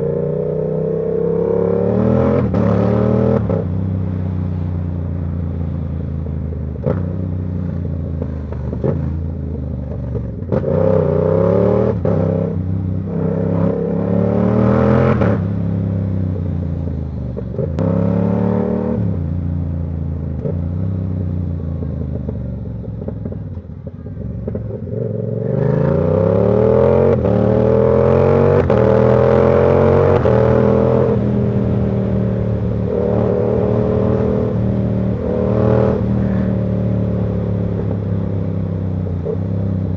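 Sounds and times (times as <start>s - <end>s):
motorcycle engine revving: 17.3s - 39.9s.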